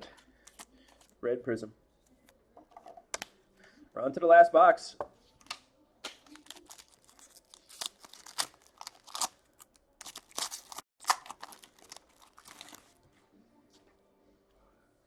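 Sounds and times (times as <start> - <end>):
plastic wrapping tearing and crinkling: 6.2 - 13.0.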